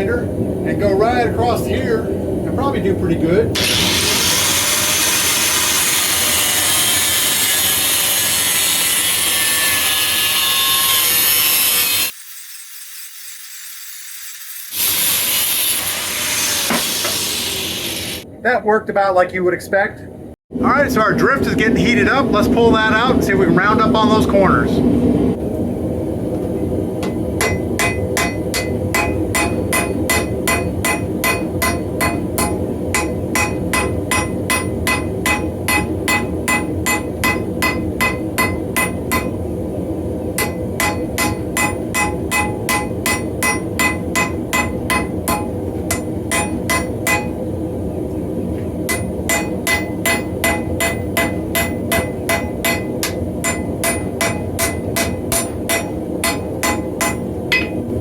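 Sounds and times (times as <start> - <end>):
steady low rumble: 0.0 - 3.6, 18.2 - 58.0
hammer striking steel on anvil: 27.0 - 39.4, 40.4 - 47.4, 48.9 - 57.9.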